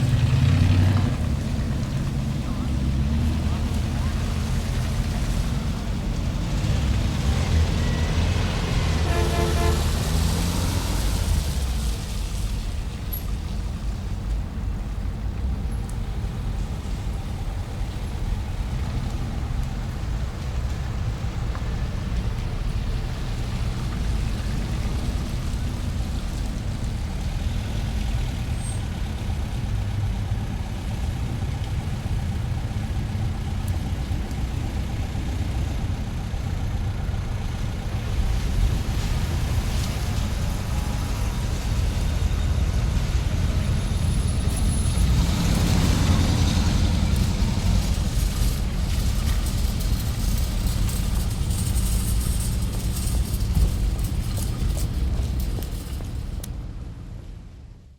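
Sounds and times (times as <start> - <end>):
car engines and traffic rumble: 0.0 - 57.9
light rattles and clicks: 43.6 - 56.6.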